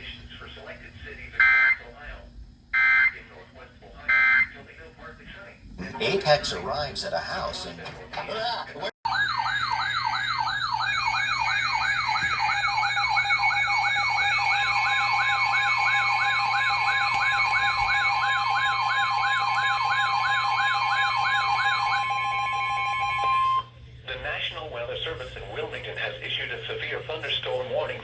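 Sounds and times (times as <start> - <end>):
electronic siren yelping alert tone: 2.8 - 3.2, 4.1 - 4.5, 9.1 - 23.7.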